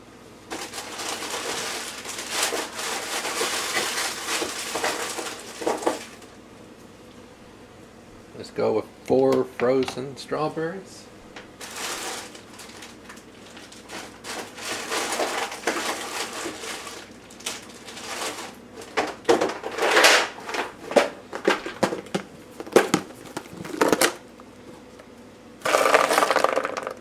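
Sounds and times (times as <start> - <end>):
plastic bag rustling: 0.5 - 6.1, 11.6 - 25.0, 25.6 - 27.0
frozen berries knocking into plastic cup: 20.9 - 24.2, 25.6 - 27.0.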